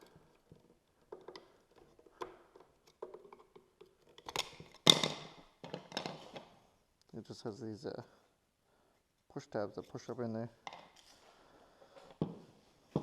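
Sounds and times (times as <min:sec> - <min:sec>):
plastic tabs clicking and rustling: 0:00.0 - 0:06.4.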